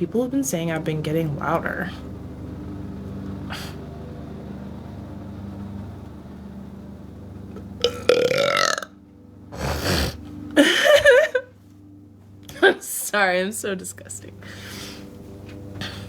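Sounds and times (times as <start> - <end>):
woman burping: 7.8 - 8.9.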